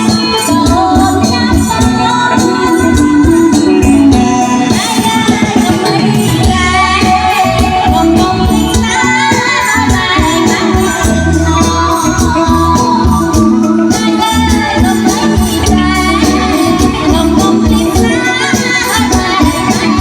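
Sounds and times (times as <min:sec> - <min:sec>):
band with steady beat: 0:00.0 - 0:20.0
person singing: 0:00.0 - 0:20.0.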